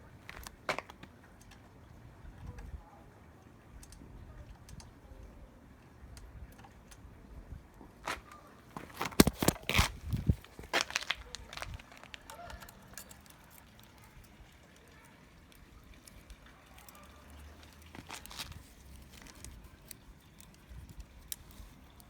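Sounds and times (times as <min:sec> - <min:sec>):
tools and metal parts handled: 0:08.0 - 0:22.0.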